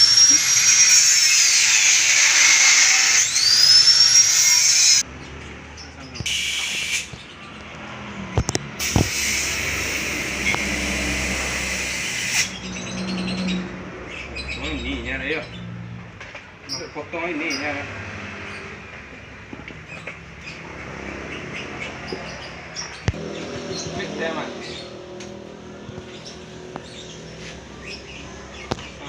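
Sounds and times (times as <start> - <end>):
high-pitched power tool whining: 0.0 - 5.1, 8.8 - 12.9.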